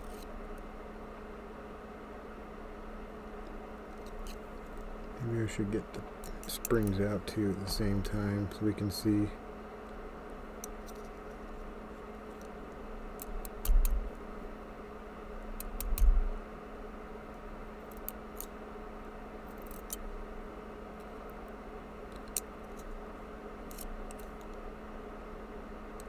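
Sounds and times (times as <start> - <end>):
steady electrical hum: 0.0 - 26.0
small metallic clicks of lock pins: 6.2 - 7.1, 15.6 - 16.2, 19.5 - 20.1, 23.7 - 24.6.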